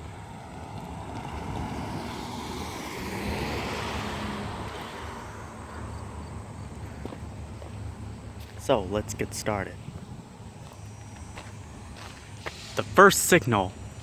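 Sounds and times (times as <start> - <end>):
vehicle passing by: 0.0 - 9.4.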